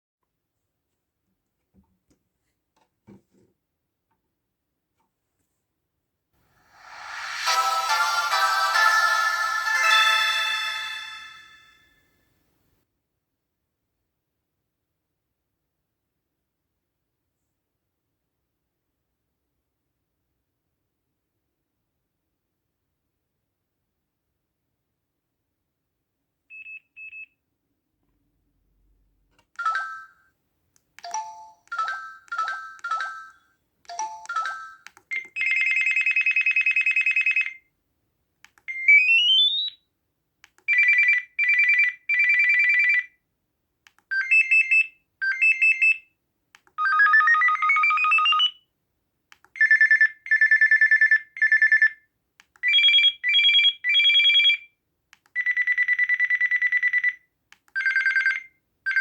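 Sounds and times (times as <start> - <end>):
electronic ringtone melody: 6.8 - 11.8, 31.1 - 34.8, 46.8 - 48.6
phone ringtone beeps: 6.8 - 11.8, 31.1 - 37.6, 46.8 - 48.6, 49.6 - 52.0, 52.6 - 54.6, 55.4 - 57.2, 57.8 - 59.0.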